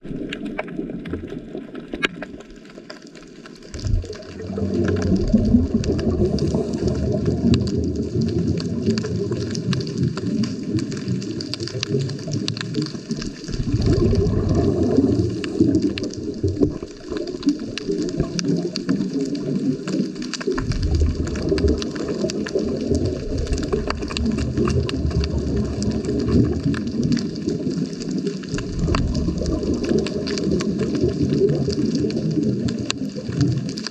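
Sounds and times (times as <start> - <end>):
faint crackle of clicks: 0.0 - 33.9
underwater bubbles rumbling: 0.0 - 33.9.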